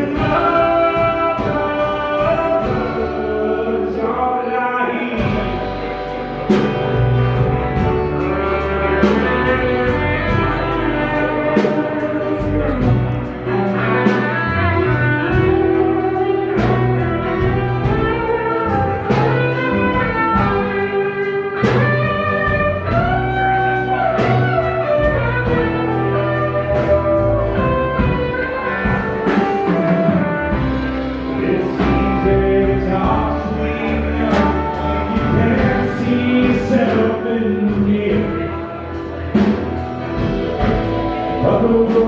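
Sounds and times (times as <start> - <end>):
bass guitar: 0.0 - 42.0
drums: 0.0 - 42.0
electric guitar lead with bends: 0.0 - 42.0.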